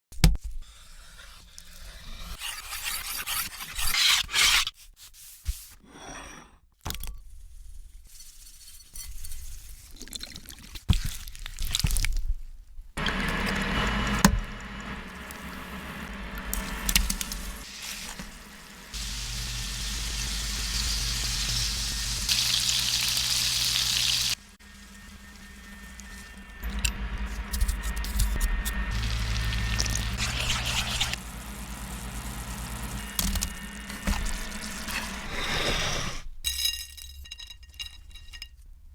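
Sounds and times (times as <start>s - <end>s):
low hum: 13.0s - 35.5s
steady hissing noise: 15.6s - 26.6s
rough rubbing and scraping: 24.0s - 33.0s, 33.8s - 36.4s.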